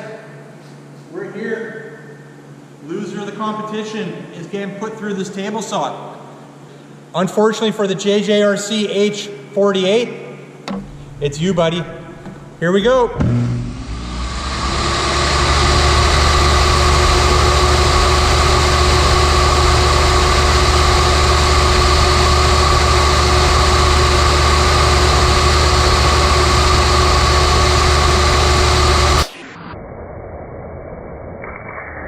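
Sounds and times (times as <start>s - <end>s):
table saw running: 10.7s - 29.3s.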